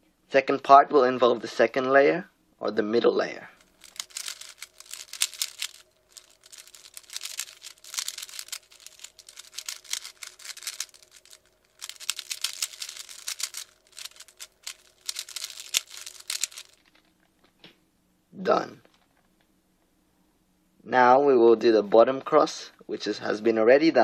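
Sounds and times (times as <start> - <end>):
puzzle cube clicking: 3.8 - 16.8.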